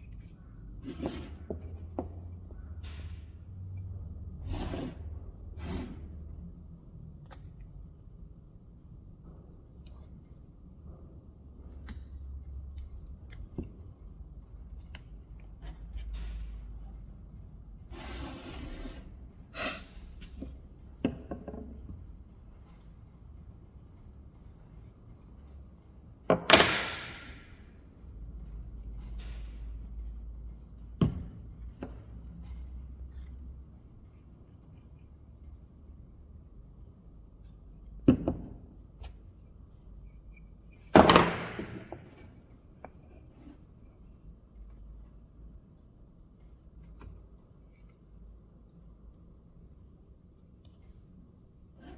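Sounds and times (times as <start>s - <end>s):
rubbing or scraping: 0.0s - 1.8s, 4.4s - 6.2s, 17.9s - 19.9s.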